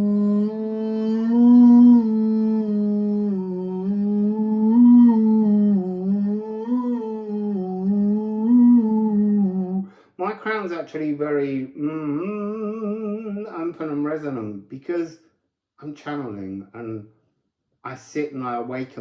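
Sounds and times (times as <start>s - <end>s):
man humming a long tone: 0.0s - 10.0s, 11.8s - 13.6s.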